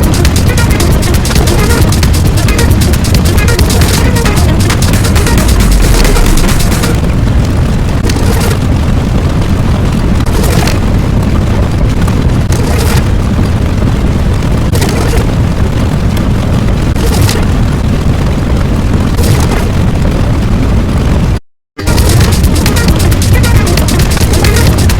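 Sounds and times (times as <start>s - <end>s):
sharp blasts: 0.0s - 7.2s, 21.8s - 24.9s
rumbling explosion: 0.0s - 24.9s.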